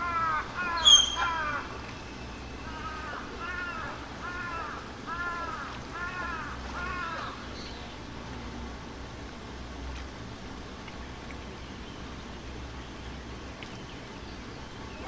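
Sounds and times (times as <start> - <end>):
bird calling: 0.0 - 7.8.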